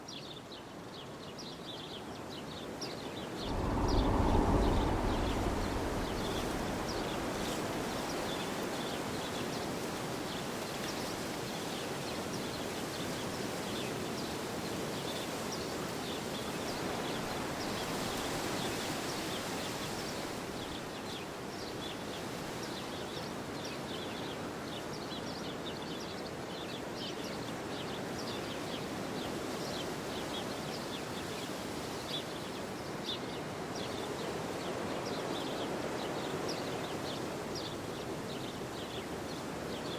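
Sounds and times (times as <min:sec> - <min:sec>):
strong wind blowing: 0:03.4 - 0:09.4
wind buffeting microphone: 0:03.4 - 0:09.6.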